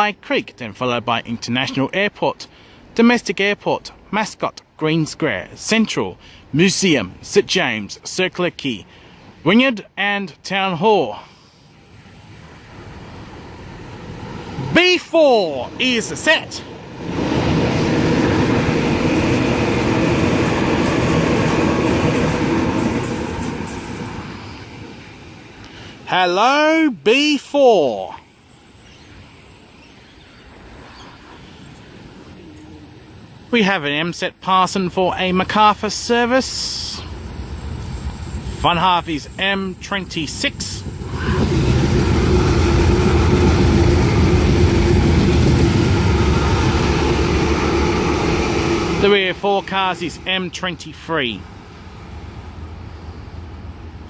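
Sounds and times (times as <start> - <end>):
train wheels on rail: 11.8 - 26.0, 34.3 - 54.0.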